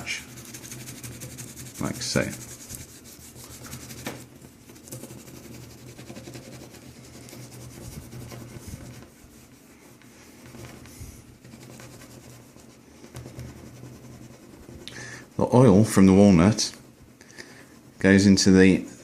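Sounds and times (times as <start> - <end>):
walnut rubbing on wood: 0.0 - 19.0.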